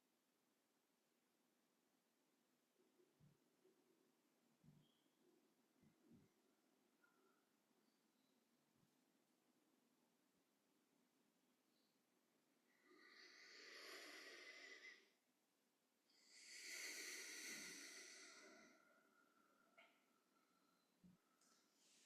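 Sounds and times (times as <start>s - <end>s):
faint slow breaths: 12.7s - 15.2s, 16.1s - 22.0s.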